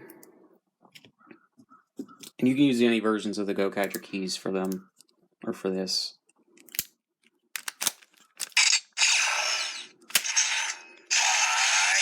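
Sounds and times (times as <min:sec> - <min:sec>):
sharp plastic clicks: 0:06.6 - 0:09.0
toy blaster sound effects: 0:08.5 - 0:12.0.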